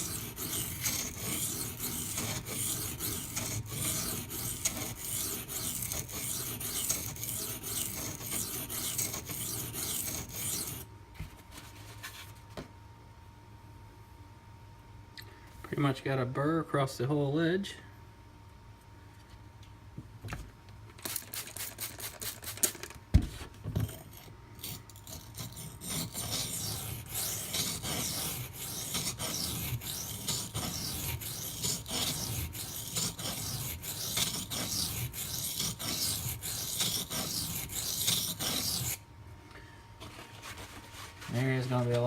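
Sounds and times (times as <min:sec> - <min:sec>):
knife blade scraping on stone: 0:00.0 - 0:10.8, 0:23.8 - 0:39.0.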